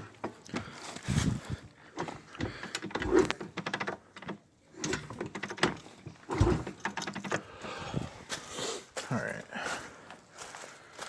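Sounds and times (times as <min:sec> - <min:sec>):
irregular knocks and clicks: 0:02.0 - 0:07.5.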